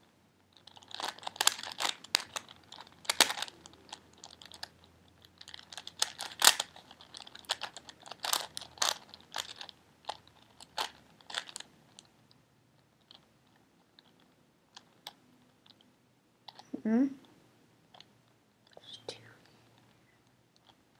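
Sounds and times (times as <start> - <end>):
puzzle cube layers clicking: 0.6 - 12.1.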